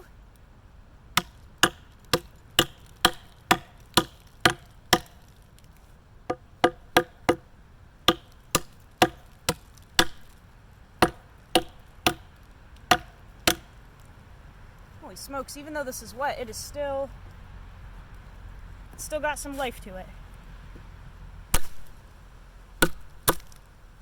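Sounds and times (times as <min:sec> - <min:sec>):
tomahawk chopping wet wood: 0:01.1 - 0:14.1, 0:21.5 - 0:22.1, 0:22.8 - 0:23.7.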